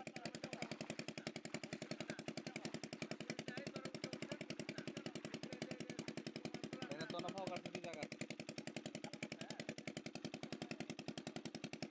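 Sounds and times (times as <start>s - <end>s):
faint voices: 0.0s - 8.2s
small engine thudding: 0.0s - 11.9s.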